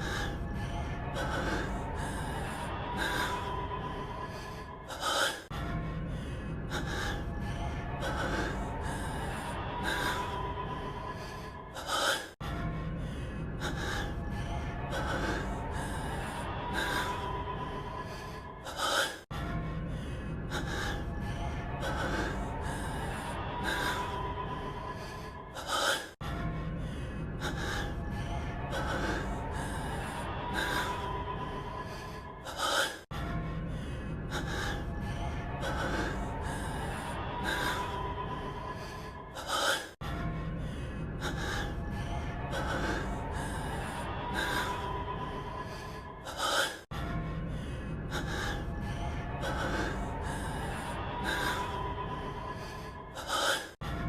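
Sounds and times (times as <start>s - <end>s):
man breathing heavily: 0.0s - 54.0s
man gasping: 38.5s - 41.8s, 45.5s - 48.8s, 52.2s - 53.9s.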